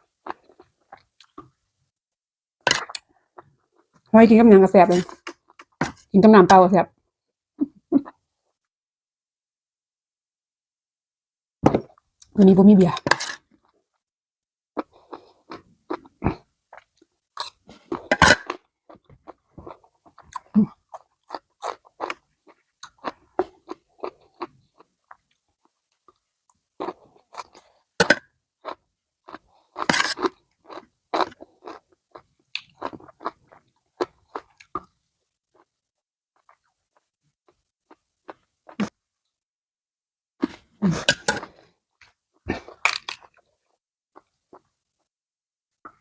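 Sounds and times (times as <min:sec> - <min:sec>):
close chewing and crunching: 0:14.8 - 0:35.7, 0:40.4 - 0:44.7.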